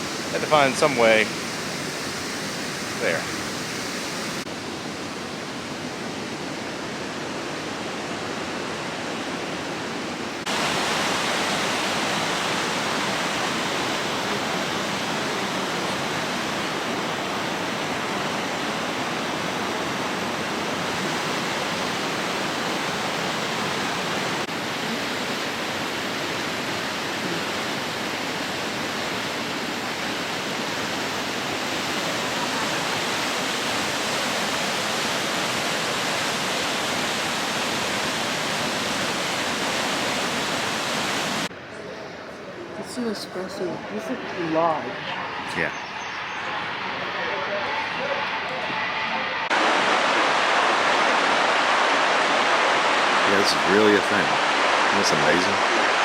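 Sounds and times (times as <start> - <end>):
water rushing over rocks: 0.0 - 4.5, 10.4 - 41.5, 49.5 - 56.0.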